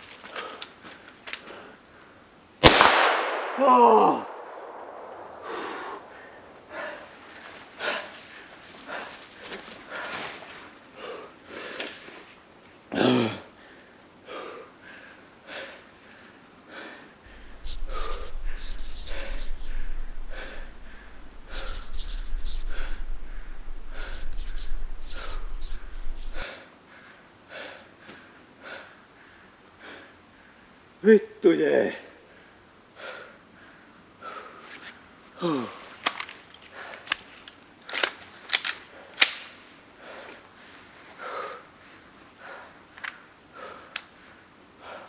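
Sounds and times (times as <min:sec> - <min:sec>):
man breathing hard: 0:05.4 - 0:07.2, 0:13.6 - 0:28.0, 0:28.6 - 0:30.7, 0:32.3 - 0:34.6, 0:43.5 - 0:45.0
rumble on microphone: 0:17.3 - 0:26.4.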